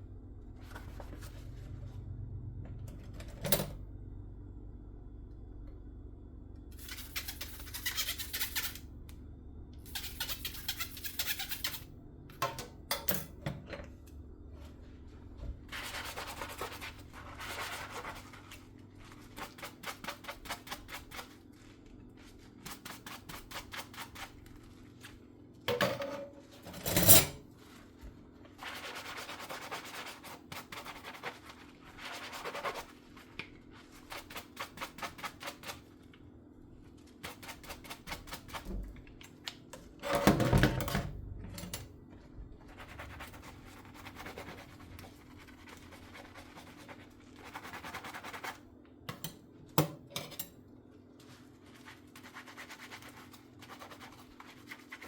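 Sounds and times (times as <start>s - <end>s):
steady low hum: 0.0s - 6.9s, 8.7s - 10.1s, 11.8s - 22.6s
sponge scrubbing dishes: 14.6s - 25.4s, 26.4s - 36.1s, 42.0s - 48.7s, 50.9s - 55.0s.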